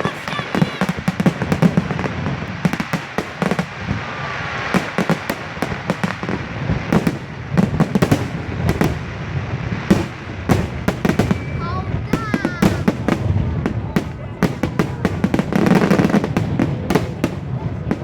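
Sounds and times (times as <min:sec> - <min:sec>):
fireworks bangs and crackles: 0:00.0 - 0:18.0.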